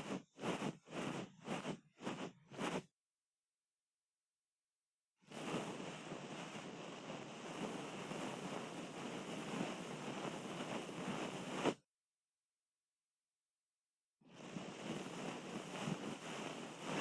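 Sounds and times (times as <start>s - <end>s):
rubbing and scratching in ear: 0.0s - 2.8s.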